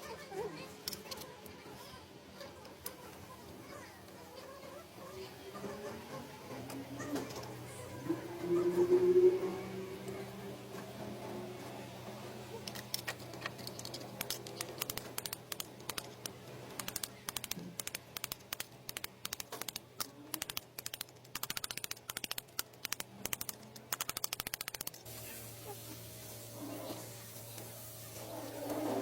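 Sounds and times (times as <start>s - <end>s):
ratchet wrench clicking: 20.4s - 25.0s.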